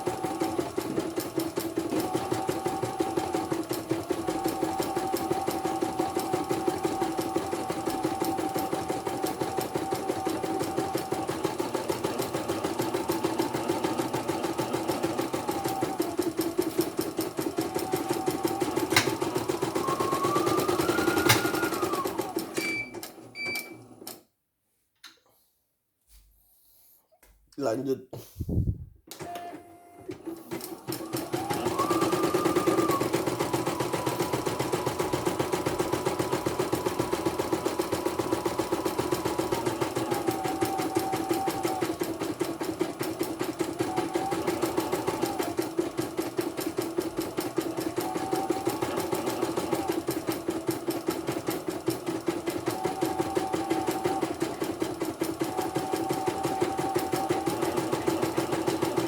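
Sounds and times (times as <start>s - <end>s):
short machine whines: 18.0s - 23.9s.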